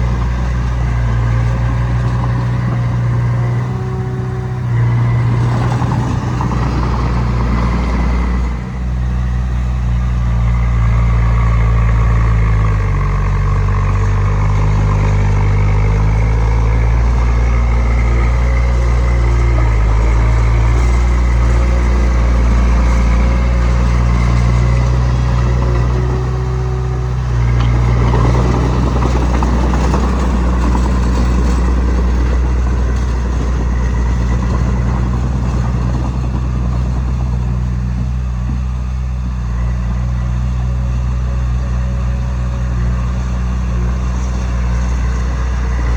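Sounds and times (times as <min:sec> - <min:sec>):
heavy diesel engine running: 0:00.0 - 0:45.9.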